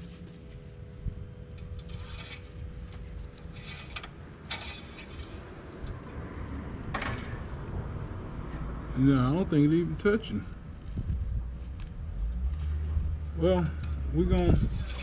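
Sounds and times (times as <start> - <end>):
dipstick scraping and rustling: 1.6 - 5.9, 13.8 - 15.0.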